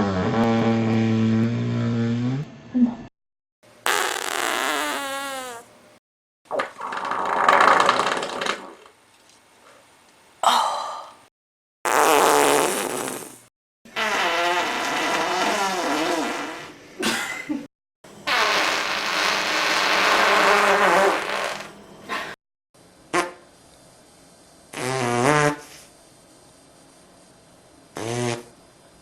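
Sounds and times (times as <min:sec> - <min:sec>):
farts: 0:00.0 - 0:02.5, 0:03.8 - 0:05.7, 0:11.9 - 0:16.8, 0:18.2 - 0:22.3, 0:23.1 - 0:23.4, 0:24.7 - 0:25.9, 0:28.0 - 0:28.6.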